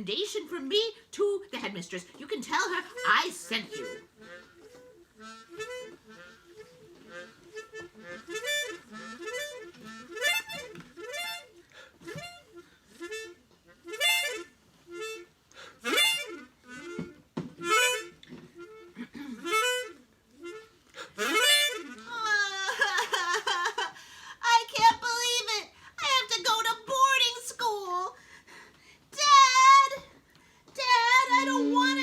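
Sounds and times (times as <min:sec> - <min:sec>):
harmonica playing: 0:02.5 - 0:24.2, 0:30.8 - 0:32.0.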